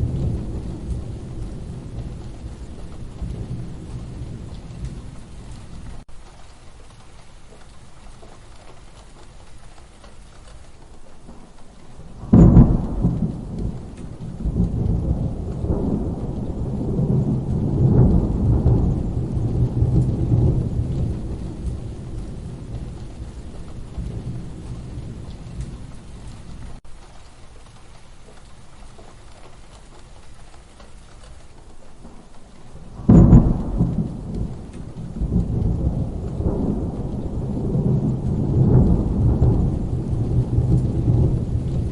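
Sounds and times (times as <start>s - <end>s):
sharp thunderclap: 0.0s - 6.0s, 12.1s - 26.8s, 32.8s - 41.9s
rolling thunder rumbles: 0.0s - 7.0s, 9.8s - 26.8s, 28.4s - 41.9s
steady rain: 0.0s - 41.9s.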